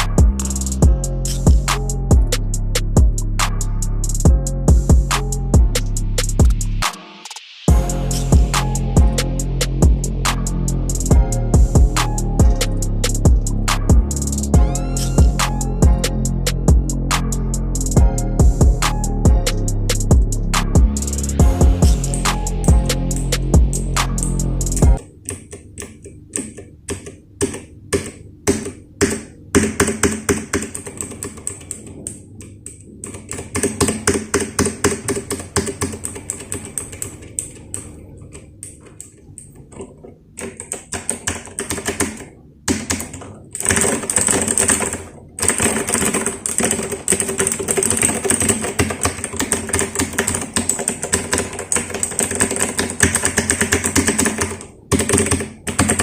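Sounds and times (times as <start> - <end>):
mechanical keyboard typing: 21.1 - 56.0.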